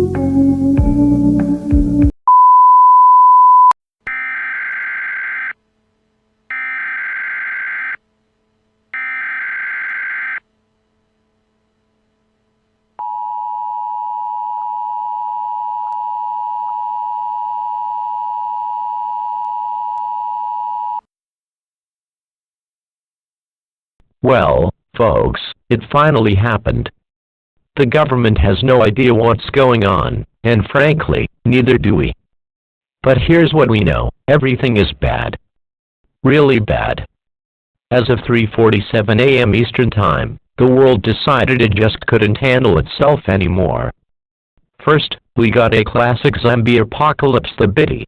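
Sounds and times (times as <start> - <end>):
loud steady beep: 2.3 - 5.6, 6.5 - 8.0, 9.0 - 10.4, 13.0 - 18.1
two-tone attention signal: 2.3 - 5.6, 6.5 - 8.0, 9.0 - 10.4
buzzy data bursts: 4.1 - 5.6, 6.4 - 12.5.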